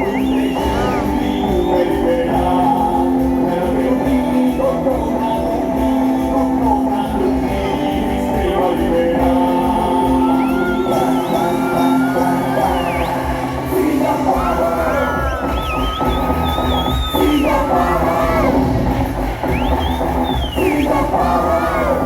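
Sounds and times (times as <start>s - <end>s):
crowd shouting and whooping: 0.0s - 3.6s, 9.3s - 22.0s
recorded music with singing: 0.0s - 22.0s.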